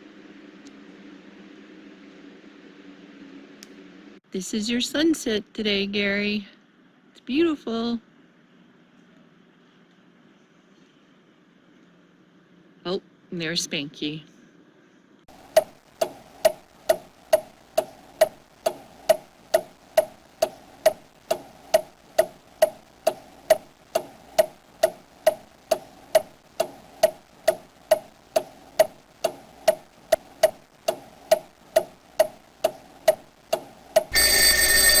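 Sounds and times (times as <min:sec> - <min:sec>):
steady ticking with ringing tone: 0:15.3 - 0:35.0.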